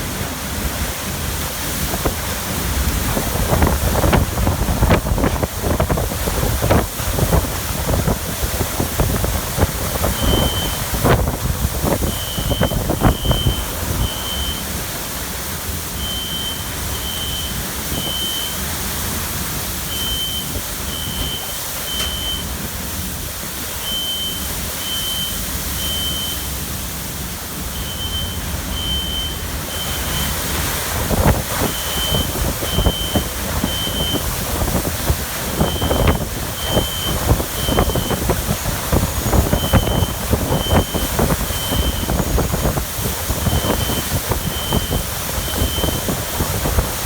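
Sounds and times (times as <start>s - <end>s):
hurricane winds gusting: 0.0s - 24.7s, 25.4s - 47.0s
electronic alarm beeps: 10.1s - 10.9s, 12.0s - 14.7s, 16.0s - 18.6s, 19.9s - 22.5s, 23.8s - 26.5s, 27.7s - 30.4s, 31.6s - 34.3s, 35.6s - 38.6s, 39.2s - 42.2s, 43.4s - 46.2s.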